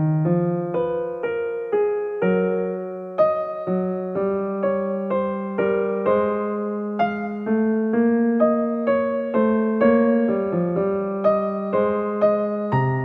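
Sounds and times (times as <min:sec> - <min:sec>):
gentle electric piano melody: 0:00.0 - 0:13.0.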